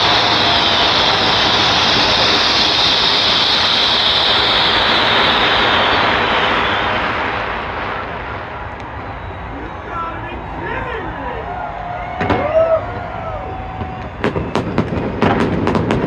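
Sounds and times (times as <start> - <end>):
fireworks crackling hiss: 0.0 - 10.9.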